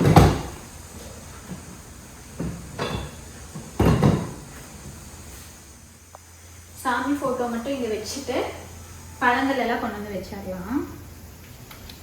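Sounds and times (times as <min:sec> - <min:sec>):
household items thudding: 0:00.0 - 0:00.6, 0:02.4 - 0:04.5.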